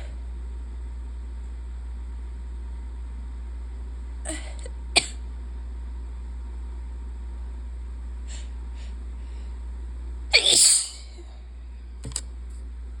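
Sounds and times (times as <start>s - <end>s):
person sneezing: 10.3s - 11.4s.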